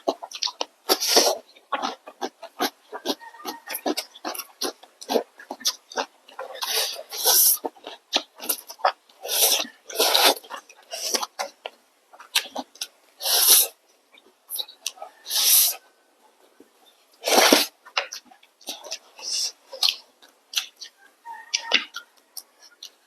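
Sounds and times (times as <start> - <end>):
noodles slurped: 0.0 - 11.6, 12.3 - 13.8, 17.2 - 20.0
wet chewing clicks: 0.0 - 15.9, 16.6 - 23.0.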